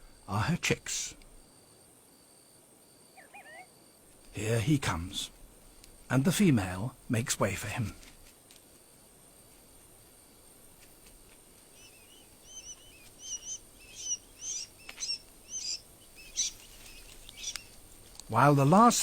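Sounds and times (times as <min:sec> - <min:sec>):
faint background hiss: 0:00.0 - 0:19.0
sandgrouse chirping: 0:11.7 - 0:17.9.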